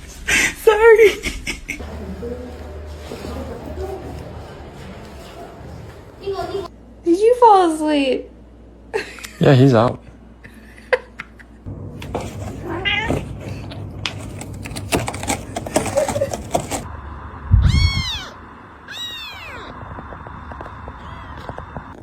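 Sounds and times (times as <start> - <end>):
rustling and clicks: 12.0 - 16.9
cat meowing: 12.7 - 13.2, 17.6 - 19.8, 20.9 - 21.7.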